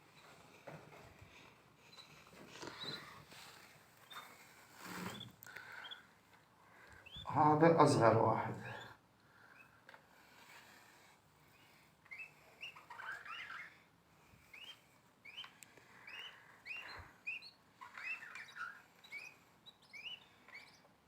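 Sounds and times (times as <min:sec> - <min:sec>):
lovebirds chirping: 0:07.0 - 0:07.6, 0:12.1 - 0:13.8, 0:14.4 - 0:20.9.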